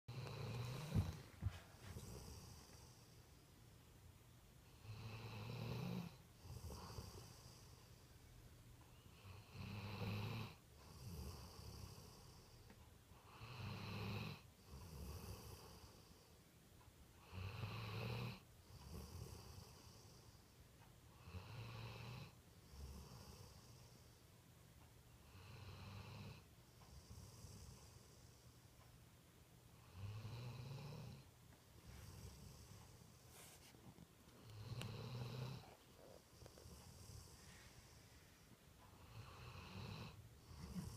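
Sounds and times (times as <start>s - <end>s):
dog snoring: 0.1s - 3.2s, 4.6s - 7.9s, 8.9s - 16.3s, 17.2s - 20.4s, 21.1s - 24.0s, 25.2s - 28.4s, 29.8s - 33.3s, 34.4s - 38.0s, 38.9s - 40.9s.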